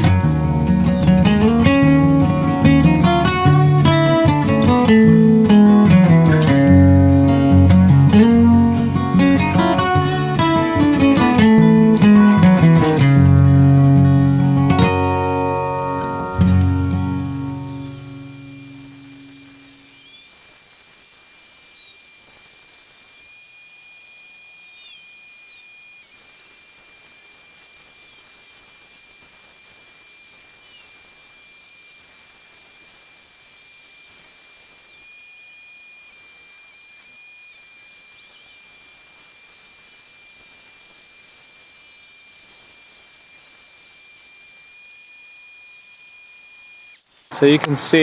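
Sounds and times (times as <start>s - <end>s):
high-pitched whine: 0.0s - 20.5s.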